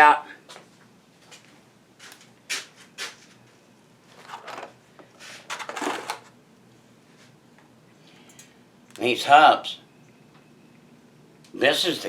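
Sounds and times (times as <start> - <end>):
rustling and scraping: 1.3 - 6.4.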